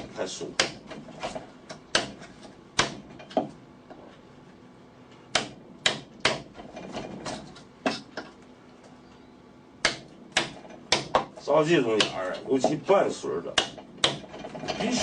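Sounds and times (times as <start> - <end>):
wood chisel knocks: 1.7 - 3.6, 9.8 - 12.8, 13.5 - 14.3.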